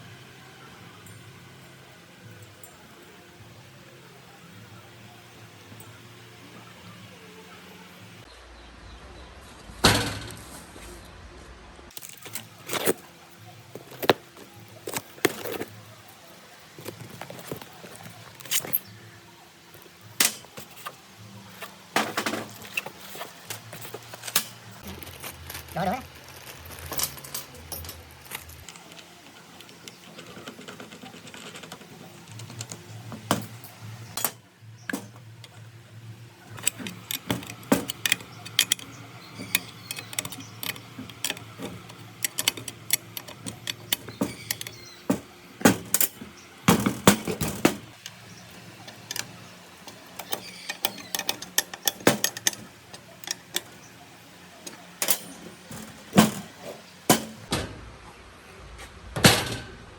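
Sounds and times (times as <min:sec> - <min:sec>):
metallic clicks of hand tools: 0:36.5 - 0:44.9.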